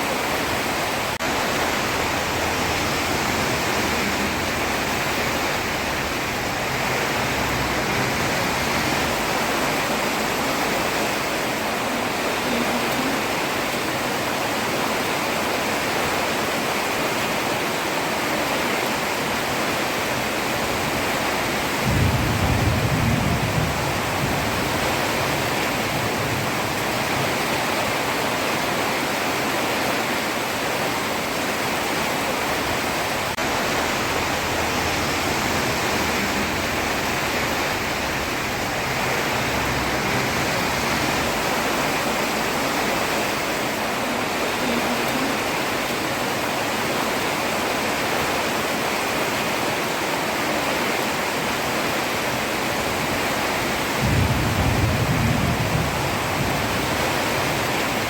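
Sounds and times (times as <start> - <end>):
heavy rain on a road: 0.0 - 58.0
low rumble: 33.4 - 43.6.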